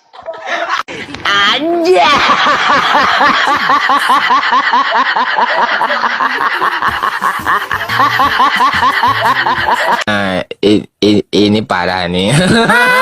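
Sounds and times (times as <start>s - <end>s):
snickering laughter: 2.2s - 10.1s, 12.4s - 13.0s.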